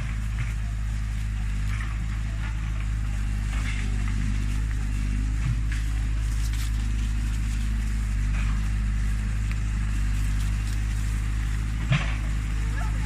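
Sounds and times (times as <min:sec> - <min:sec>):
heavy diesel engine humming: 0:00.0 - 0:13.0.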